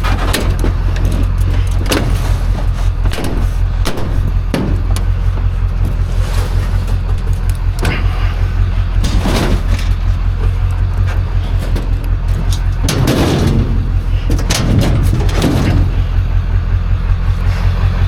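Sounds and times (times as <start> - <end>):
metal clanks and rattles: 0.0 - 18.0
vehicle engine idling: 0.0 - 18.0.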